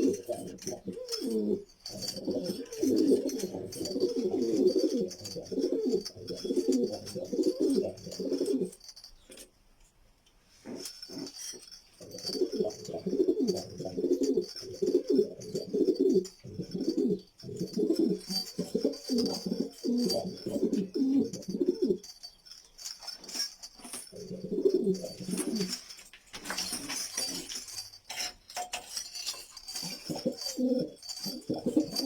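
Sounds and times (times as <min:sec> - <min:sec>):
pigeons cooing: 0:00.0 - 0:08.8, 0:12.0 - 0:22.1, 0:24.1 - 0:25.8, 0:29.8 - 0:32.0.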